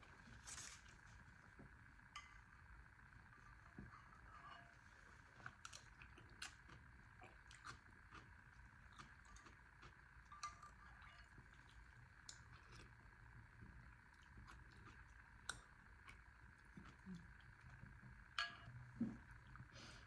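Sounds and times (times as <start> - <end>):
low background hum: 0.0 - 20.0
quiet chewing: 5.0 - 13.0, 13.7 - 18.1.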